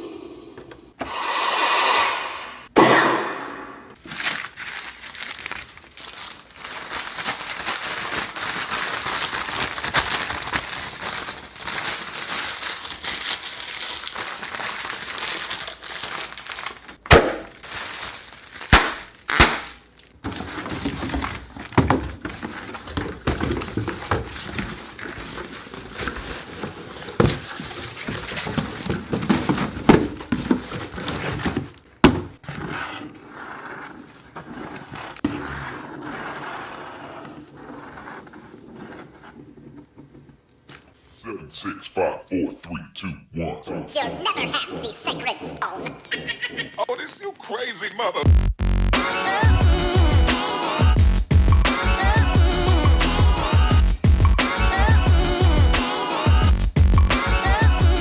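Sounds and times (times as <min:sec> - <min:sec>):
crinkling and crumpling: 0:04.0 - 0:41.1
sharp cracks: 0:17.0 - 0:17.6, 0:18.6 - 0:19.9.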